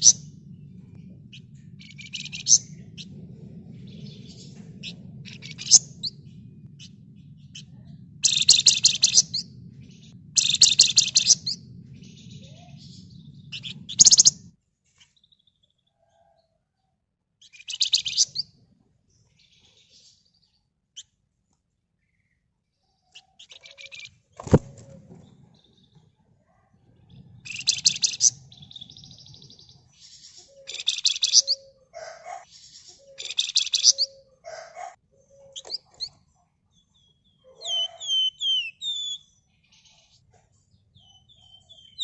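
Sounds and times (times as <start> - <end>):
songbird buzzing trills: 0.0 - 14.4
low steady hum: 0.0 - 14.6, 24.4 - 31.8
bird chirps: 0.0 - 16.3, 17.4 - 18.6, 26.9 - 42.0.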